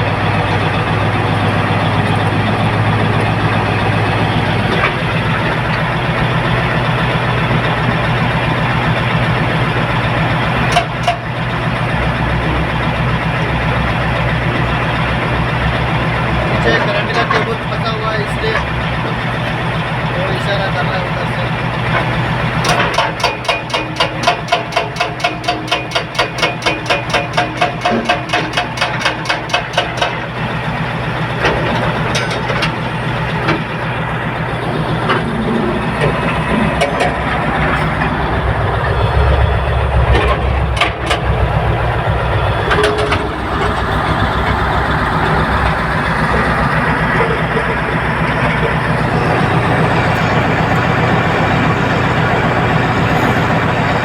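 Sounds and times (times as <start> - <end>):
diesel machinery engines running: 0.0 - 54.0
sharp knocks: 22.6 - 30.2.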